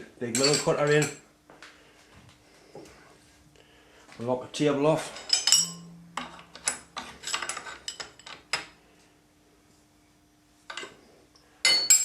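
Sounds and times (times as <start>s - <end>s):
metallic clinks and knocks: 5.2s - 8.7s.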